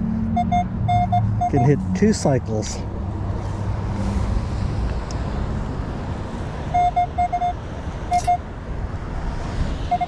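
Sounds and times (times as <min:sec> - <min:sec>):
metal detector short beeps: 0:00.4 - 0:01.7, 0:06.8 - 0:08.4.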